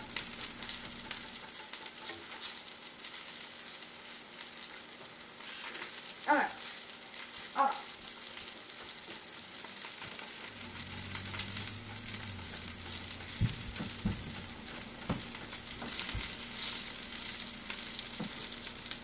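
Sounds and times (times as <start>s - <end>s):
beans sizzling in pan: 0.0s - 19.0s
light stirring knocks: 10.9s - 16.4s.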